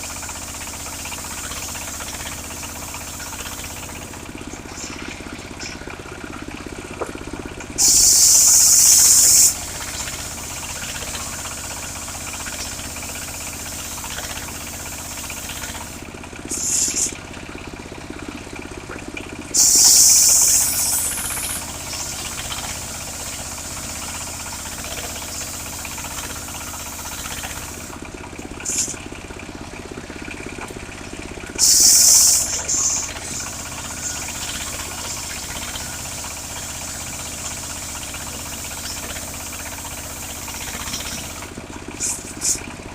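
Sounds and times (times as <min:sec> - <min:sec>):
sawmill engine running: 0:00.0 - 0:42.9
saw blade hissing into log: 0:07.8 - 0:10.1, 0:14.7 - 0:17.2, 0:19.6 - 0:23.4, 0:28.6 - 0:29.0, 0:31.6 - 0:35.7, 0:42.0 - 0:42.6.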